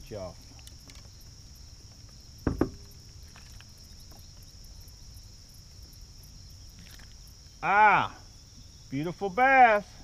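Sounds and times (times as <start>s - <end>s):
high-pitched insect chorus: 0.0s - 10.0s
sharp knocks: 2.4s - 2.9s.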